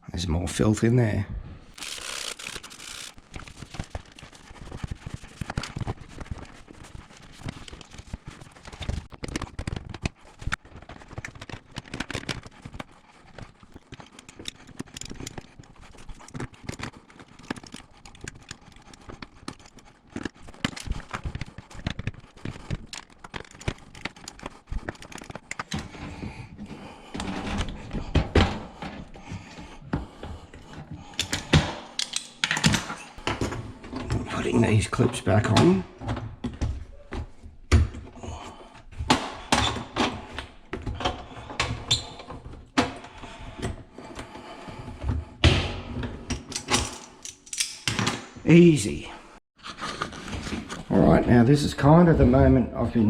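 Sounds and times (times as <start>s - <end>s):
plastic parts clicking and knocking: 1.8s - 4.3s, 7.4s - 26.0s, 31.1s - 34.2s, 45.5s - 48.3s.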